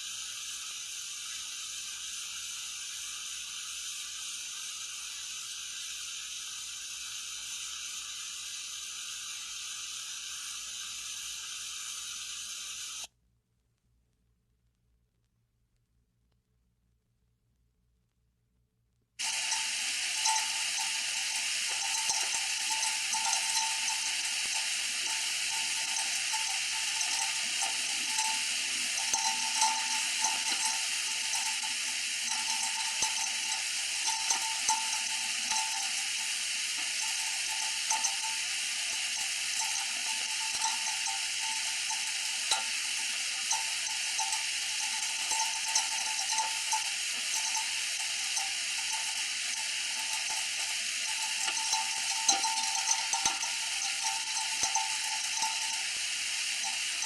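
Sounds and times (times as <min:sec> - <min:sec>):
steam radiator hissing: 0:00.0 - 0:13.1, 0:19.2 - 0:57.0
wavering whistle: 0:19.2 - 0:56.0.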